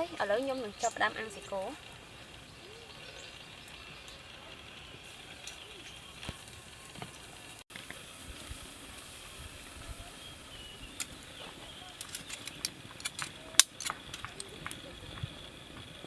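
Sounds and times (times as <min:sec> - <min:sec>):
wood fire crackling: 0:00.0 - 0:16.0
sharp fire pops: 0:03.6 - 0:16.0.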